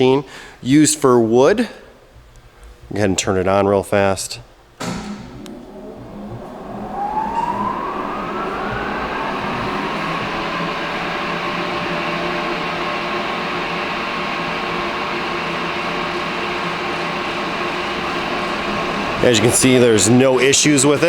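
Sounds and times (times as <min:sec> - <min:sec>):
disc sander motor whining: 0:04.8 - 0:19.4.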